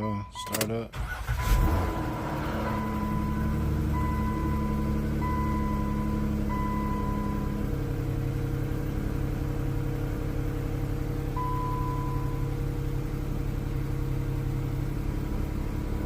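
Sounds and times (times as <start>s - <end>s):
high electronic car chimes: 0.0s - 7.8s, 11.3s - 12.6s
car engine idling: 0.0s - 16.0s.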